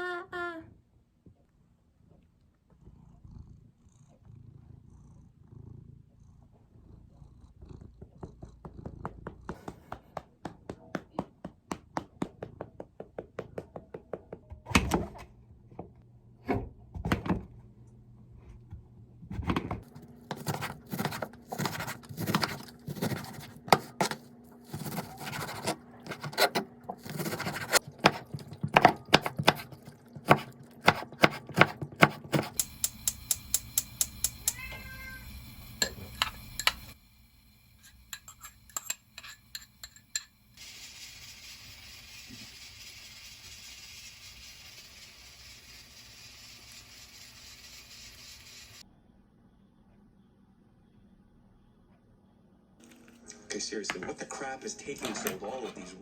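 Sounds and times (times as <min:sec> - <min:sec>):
cat purring: 0:01.4 - 0:11.0.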